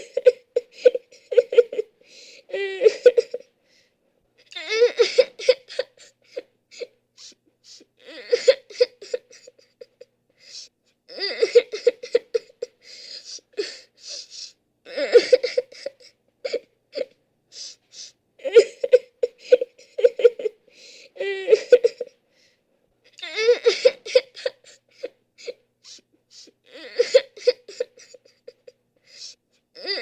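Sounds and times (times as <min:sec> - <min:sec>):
person sobbing: 0:00.0 - 0:03.5, 0:18.4 - 0:22.2, 0:23.1 - 0:30.0.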